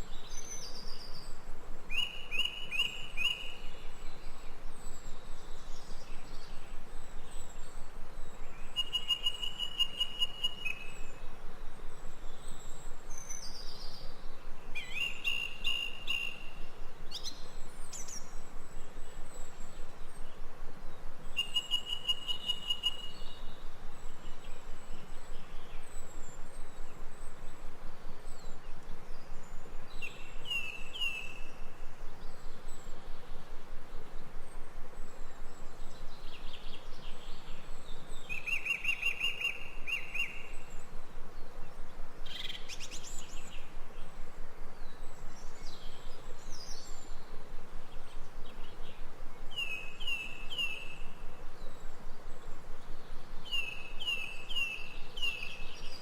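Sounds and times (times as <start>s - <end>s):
insects chorus: 0.0s - 56.0s.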